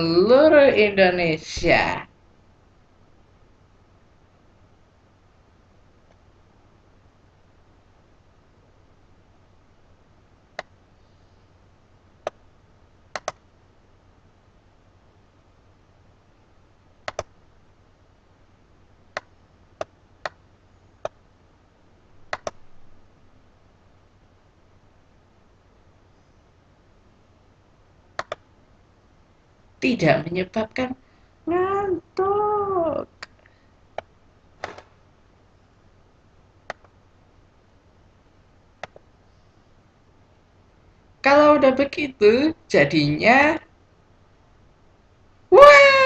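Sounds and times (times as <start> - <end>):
sharp clicks: 13.1 - 13.4, 17.0 - 17.3, 22.3 - 22.6, 28.2 - 28.4, 38.8 - 39.0.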